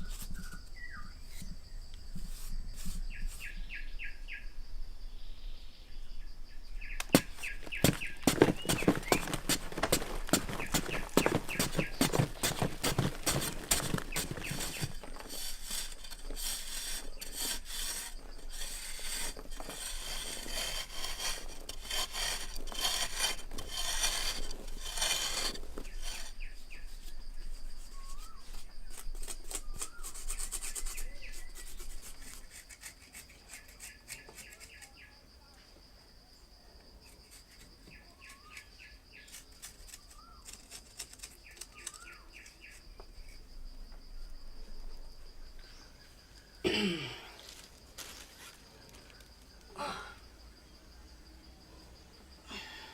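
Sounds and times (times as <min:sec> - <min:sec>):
hand tool scraping wood: 0:02.2 - 0:03.5, 0:07.0 - 0:27.2, 0:27.8 - 0:34.9, 0:37.1 - 0:43.4
birds chirping: 0:06.8 - 0:15.2.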